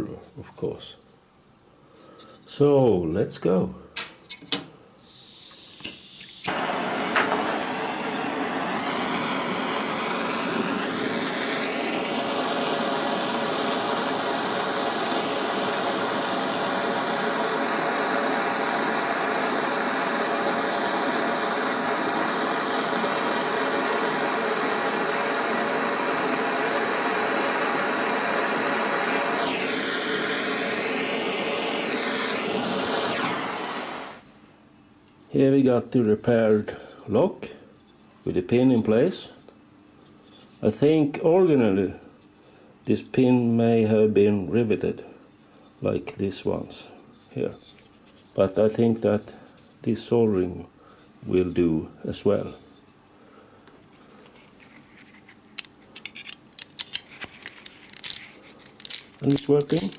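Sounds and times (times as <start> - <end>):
heat tool blowing hiss: 5.0 - 34.3, 57.5 - 59.9.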